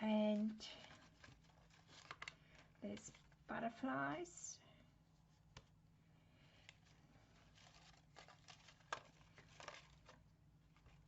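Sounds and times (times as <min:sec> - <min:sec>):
paper pieces rustling and clicking: 0:00.6 - 0:03.4, 0:07.4 - 0:10.2.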